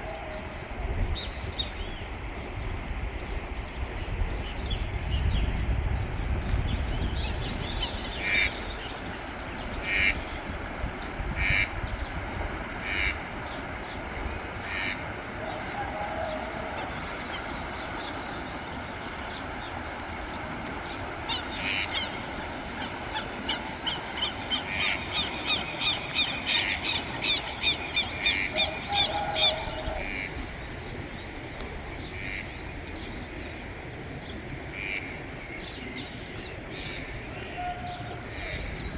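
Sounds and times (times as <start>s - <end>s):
harsh bird calls: 7.0s - 33.4s.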